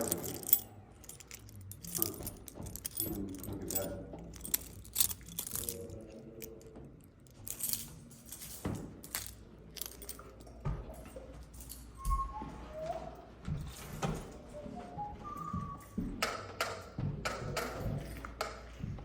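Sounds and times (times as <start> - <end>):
light metallic clinks: 0.0 - 12.0
low background hum: 0.0 - 19.0.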